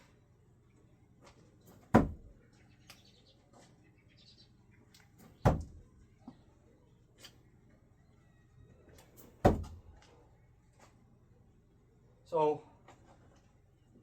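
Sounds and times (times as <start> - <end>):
sharp loud knocks: 2.0 - 2.3, 5.5 - 5.8, 9.5 - 9.8
faint bird chirps: 2.4 - 9.1.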